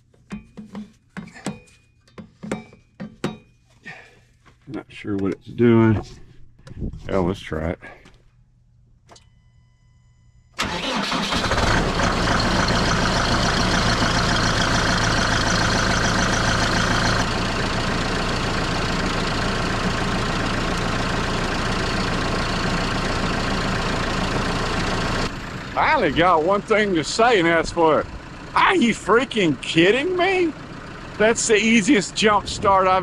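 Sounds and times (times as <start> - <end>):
diesel tractor engine running: 10.6 - 33.0.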